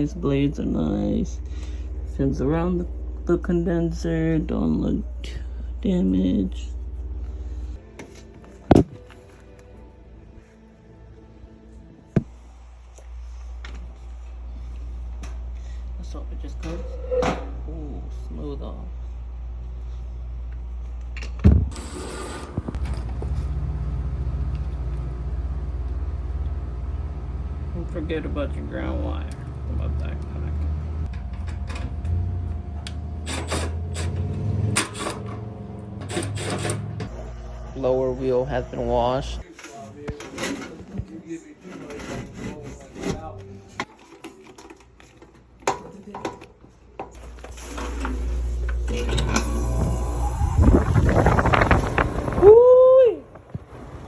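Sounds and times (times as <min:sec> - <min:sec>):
pulsing machine hum: 0:21.7 - 0:37.5, 0:48.3 - 0:52.0
parts clicking and knocking: 0:31.1 - 0:37.1.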